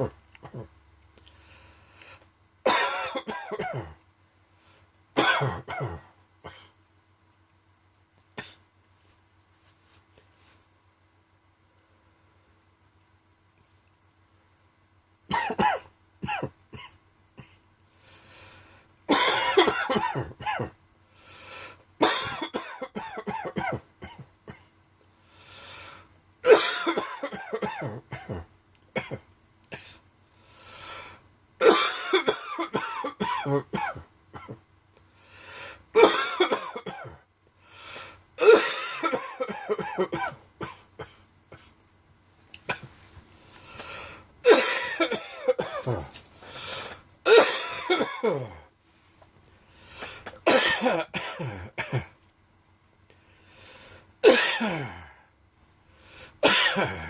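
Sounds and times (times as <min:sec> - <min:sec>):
person coughing dryly: 0:00.0 - 0:00.7, 0:02.6 - 0:04.0, 0:05.2 - 0:06.8, 0:08.4 - 0:08.6, 0:15.3 - 0:17.6, 0:19.1 - 0:20.8, 0:22.0 - 0:24.7, 0:26.4 - 0:30.0, 0:31.6 - 0:34.6, 0:35.9 - 0:37.2, 0:38.4 - 0:41.7, 0:44.0 - 0:48.7, 0:50.0 - 0:52.2, 0:54.2 - 0:55.2, 0:56.4 - 0:57.0.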